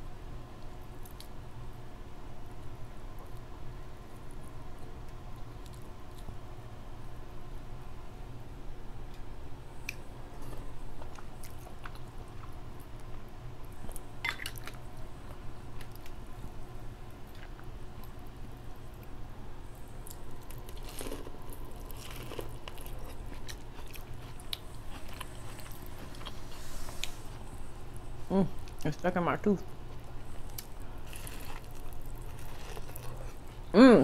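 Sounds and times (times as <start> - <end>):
steady low hum: 0.0 - 34.0
person chewing crab legs: 19.9 - 26.4, 29.9 - 33.7.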